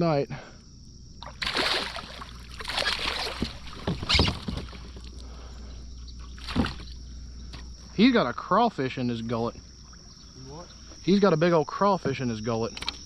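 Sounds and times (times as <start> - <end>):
water splashing: 1.2 - 5.1, 6.2 - 6.9.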